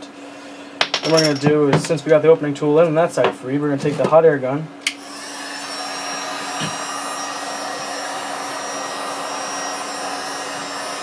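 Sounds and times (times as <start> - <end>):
heat gun blowing hot air: 5.0 - 11.0.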